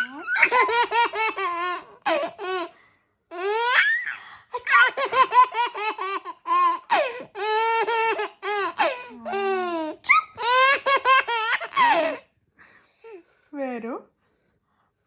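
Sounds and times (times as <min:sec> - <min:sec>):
baby laughing: 0:00.0 - 0:02.7, 0:03.3 - 0:12.2.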